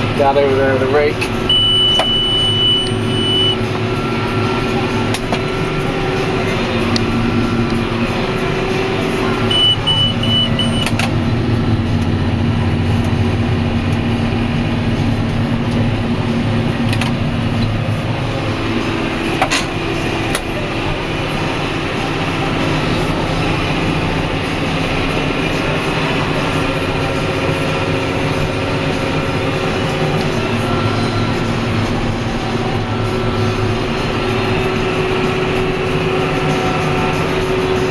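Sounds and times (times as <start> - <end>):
tractor running under load: 0.0 - 37.9
high electronic beeps: 1.5 - 3.6, 9.4 - 10.9.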